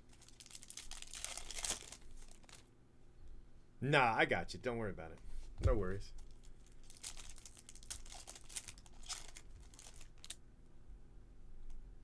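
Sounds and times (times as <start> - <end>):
wrappers crinkling and ripping: 0.0 - 2.7, 6.2 - 10.4.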